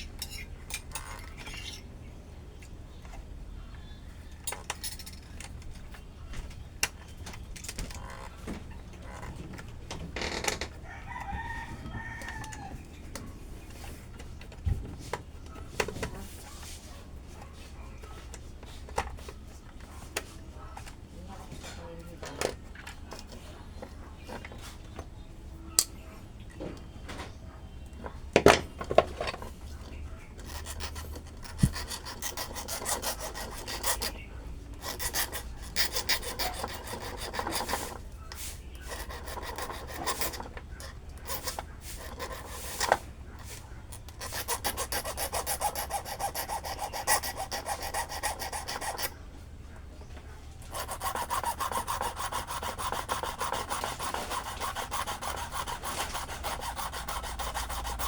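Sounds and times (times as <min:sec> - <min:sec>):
fast scraping and rasping strokes: 0:30.4 - 0:49.2, 0:50.7 - 0:58.0.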